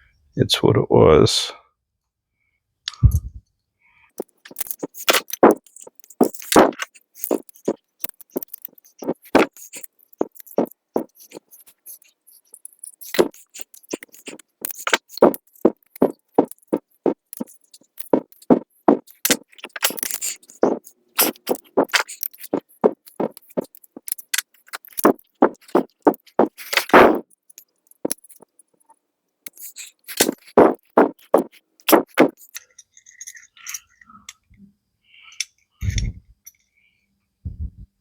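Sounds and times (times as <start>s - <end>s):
metal scraping: 4.2s - 27.2s
metal parts clicking and clinking: 4.2s - 28.6s, 29.5s - 34.1s.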